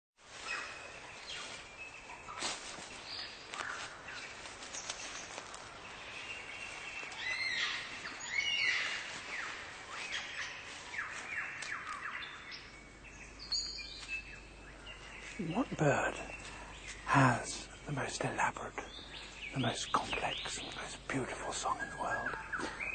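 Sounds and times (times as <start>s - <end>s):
birdsong whistled calls: 0.4s - 22.9s.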